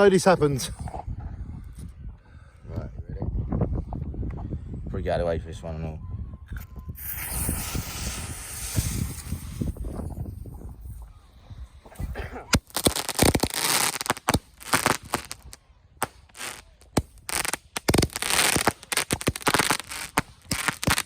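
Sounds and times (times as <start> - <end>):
fireworks cracking and popping: 7.0 - 11.0, 12.5 - 21.0.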